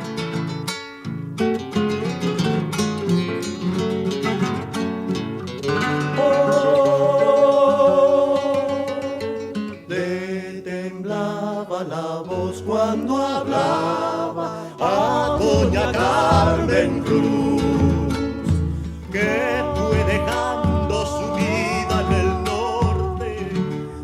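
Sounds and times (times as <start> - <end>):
acoustic guitar folk song: 0.0 - 24.0
person singing: 6.0 - 24.0.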